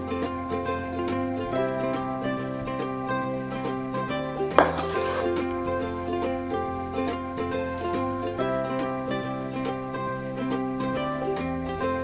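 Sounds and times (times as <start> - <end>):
plucked-string melody: 0.0 - 12.0.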